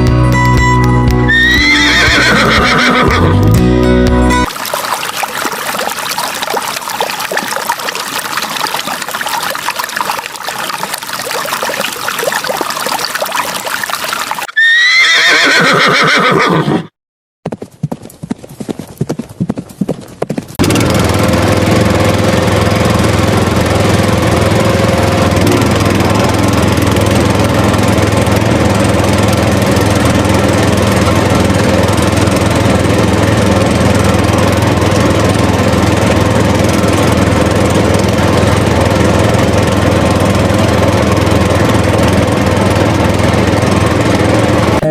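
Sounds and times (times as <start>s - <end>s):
horse whinnying: 1.3s - 3.4s, 14.5s - 16.9s.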